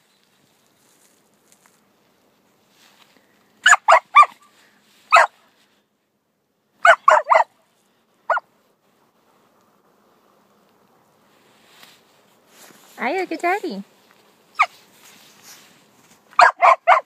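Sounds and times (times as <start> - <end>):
puppy barking: 3.6 - 4.5, 5.1 - 5.4, 6.8 - 7.5, 14.6 - 14.8, 16.4 - 17.0.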